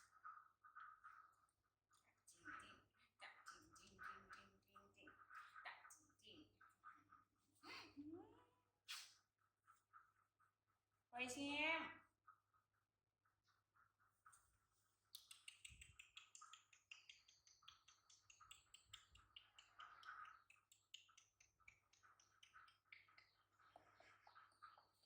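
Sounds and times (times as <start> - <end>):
faint rapid clicking: 15.1 - 24.0.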